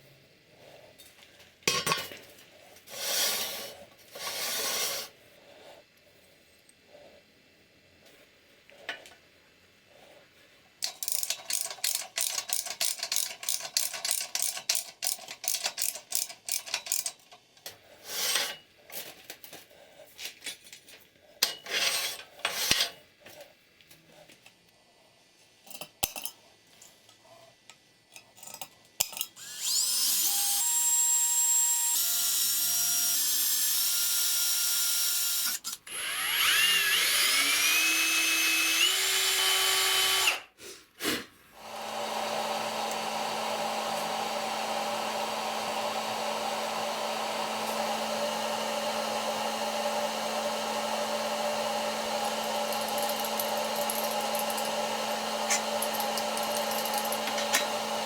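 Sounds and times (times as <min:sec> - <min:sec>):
power tool motor whining: 0:29.4 - 0:40.4, 0:41.6 - 0:58.0.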